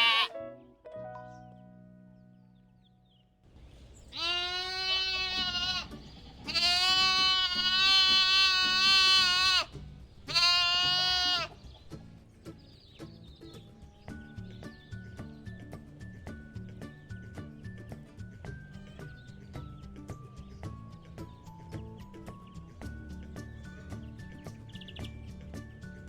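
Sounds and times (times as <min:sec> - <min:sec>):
lamb bleating: 0:00.0 - 0:00.3, 0:04.1 - 0:11.6
light background music: 0:00.0 - 0:26.0.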